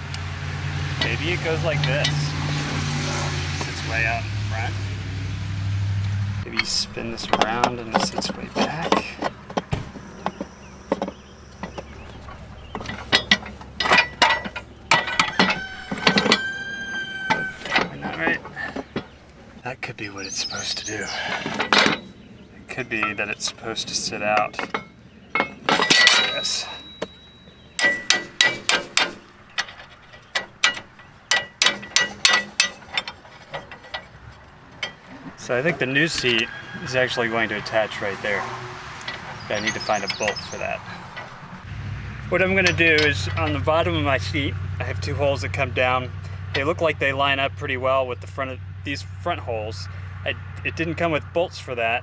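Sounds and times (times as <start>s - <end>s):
metal clanks and clicks: 0.0s - 4.1s, 6.4s - 46.9s
tractor seat knocking and clunking: 6.4s - 41.8s.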